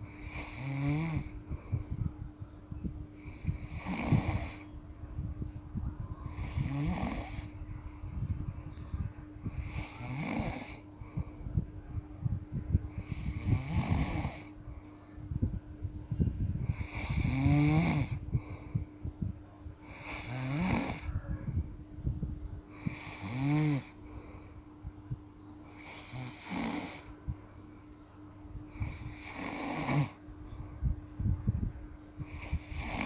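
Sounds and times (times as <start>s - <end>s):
person snoring: 0.1s - 1.3s, 3.3s - 4.6s, 6.3s - 7.5s, 9.6s - 10.8s, 13.0s - 14.5s, 16.7s - 18.2s, 19.8s - 21.2s, 22.8s - 24.0s, 25.7s - 27.1s, 28.7s - 30.2s, 32.3s - 33.0s.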